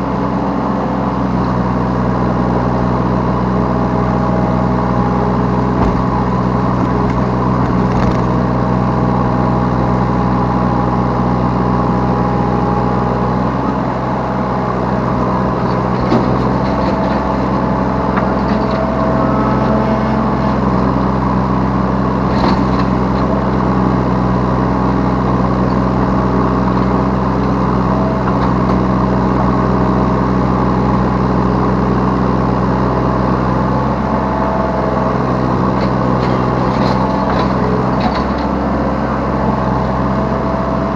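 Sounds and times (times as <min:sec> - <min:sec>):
excavator diesel engine running: 0:00.0 - 0:40.9
machine knocks: 0:05.7 - 0:08.3.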